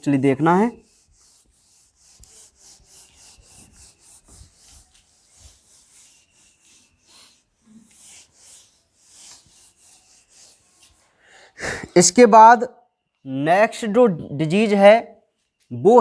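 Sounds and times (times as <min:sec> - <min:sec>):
pen scratching on paper: 0:00.2 - 0:11.1.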